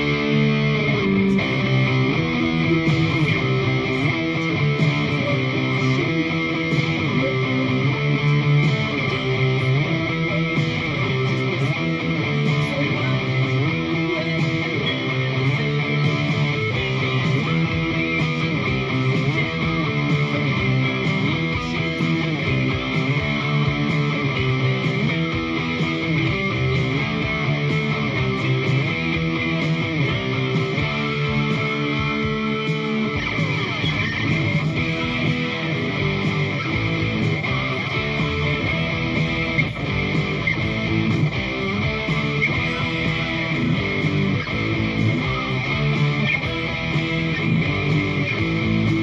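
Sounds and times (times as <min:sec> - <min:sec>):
bass guitar: 0:00.0 - 0:49.0
electric guitar rock riff: 0:00.0 - 0:49.0.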